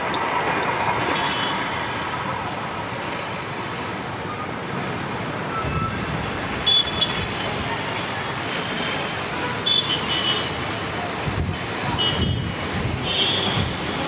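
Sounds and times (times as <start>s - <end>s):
train rolling past: 0.0s - 4.1s.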